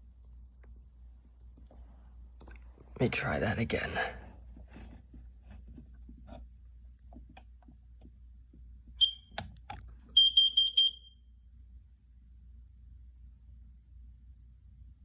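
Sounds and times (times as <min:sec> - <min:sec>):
alarm beeps: 0:09.0 - 0:09.3, 0:10.2 - 0:11.2.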